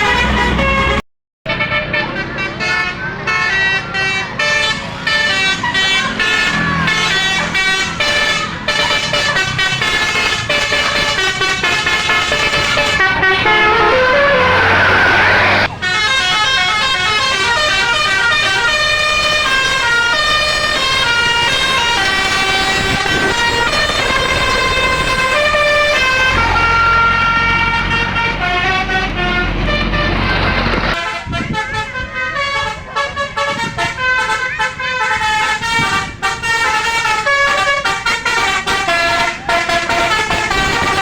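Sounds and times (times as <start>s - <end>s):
musical air horn melody: 0.0s - 41.0s
low engine drone: 4.8s - 31.6s.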